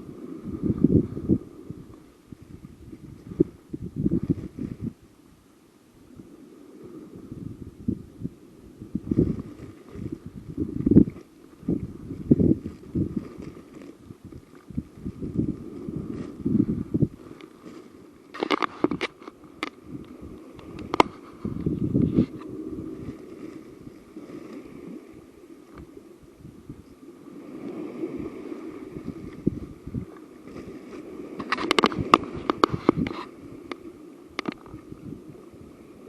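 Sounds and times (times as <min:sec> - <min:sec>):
wind buffeting microphone: 0:00.0 - 0:05.2, 0:06.0 - 0:36.0
handling crackles and clicks: 0:17.4 - 0:21.3, 0:31.4 - 0:33.8, 0:34.4 - 0:34.7.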